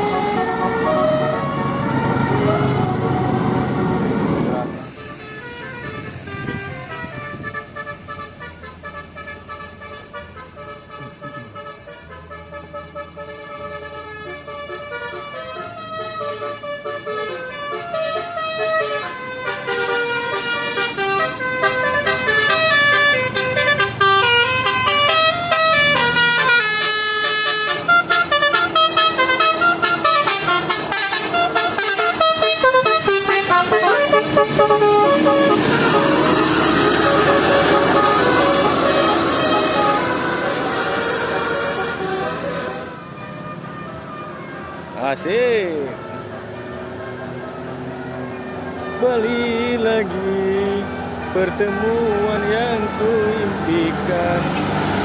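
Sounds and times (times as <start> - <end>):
loud rushing noise: 0.0 - 5.0, 33.0 - 43.0
bus horn playing a tune: 0.0 - 54.5.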